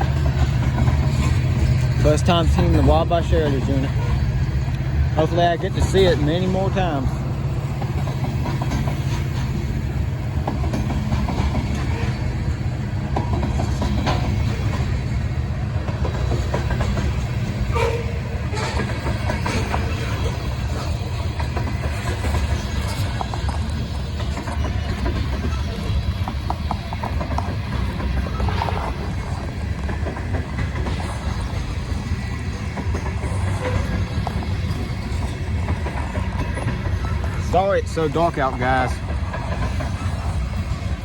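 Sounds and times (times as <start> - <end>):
train wheel clicks: 0.0 - 41.0
train wheels rumbling on rails: 0.0 - 41.0.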